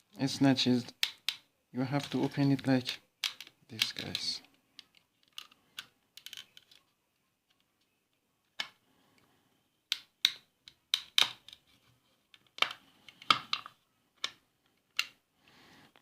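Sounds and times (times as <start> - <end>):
plastic clips clicking and snapping: 0.9 - 6.8, 9.9 - 11.6, 12.3 - 15.2.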